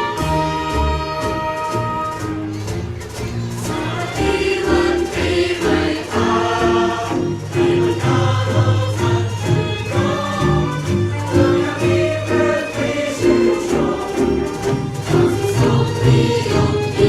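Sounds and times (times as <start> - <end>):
live band music: 0.0 - 17.0
people singing in chorus: 3.6 - 17.0.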